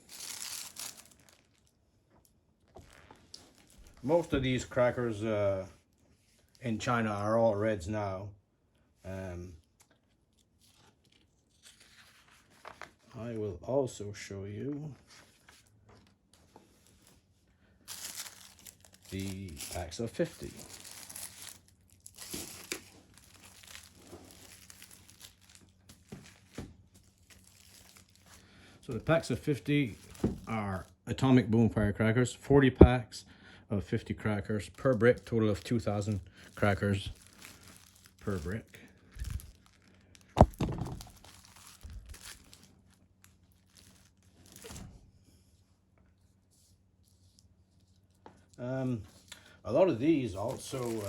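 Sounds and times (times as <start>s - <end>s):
sharp crackle: 0.0s - 1.7s, 17.9s - 28.4s, 34.7s - 44.7s
paper wrapping crinkling: 0.0s - 5.0s, 10.2s - 13.1s, 15.0s - 30.9s, 34.5s - 44.8s, 50.2s - 51.0s.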